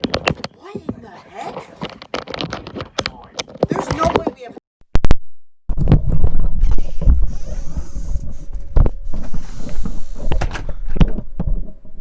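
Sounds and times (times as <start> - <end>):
wind and handling noise on microphone: 5.7 - 12.0.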